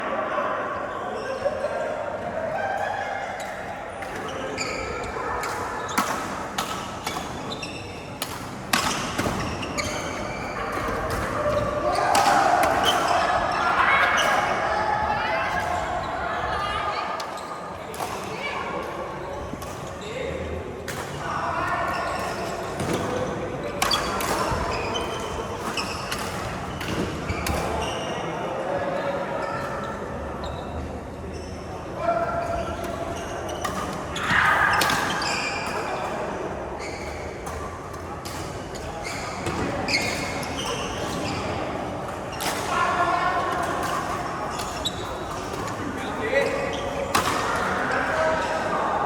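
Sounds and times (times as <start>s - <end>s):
shoes squeaking on court floor: 3.4s - 14.5s, 21.8s - 28.3s, 29.6s - 31.8s, 32.4s - 36.2s, 36.8s - 47.8s
sneakers squeaking on court: 4.1s - 13.3s, 36.8s - 41.7s
badminton rackets hitting shuttlecock: 8.2s - 13.2s.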